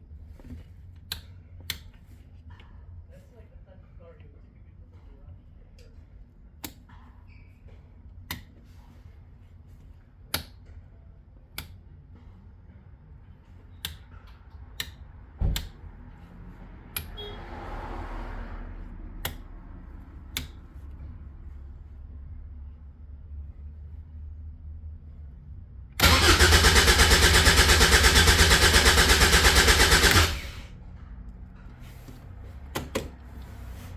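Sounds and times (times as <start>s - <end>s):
sharp clicks: 26.0s - 30.6s.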